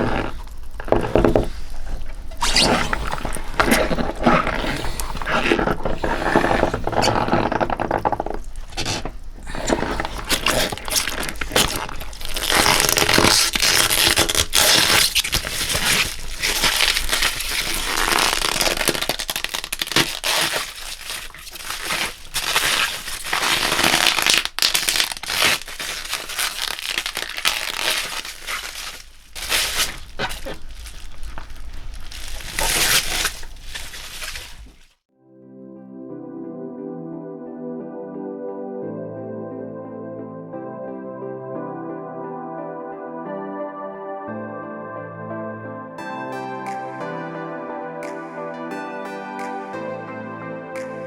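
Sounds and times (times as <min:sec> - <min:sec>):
rubber gloves wringing wet towel: 0:00.0 - 0:35.0.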